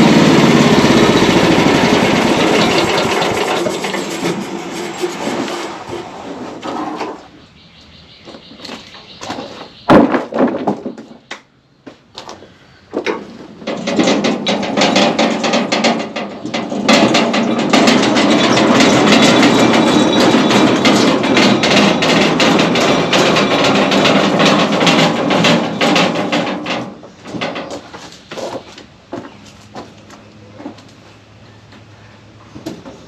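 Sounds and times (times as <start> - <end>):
sawmill clatter of rapid knocks: 0.0 - 7.2, 13.0 - 29.3
faint engine hum: 27.8 - 33.0.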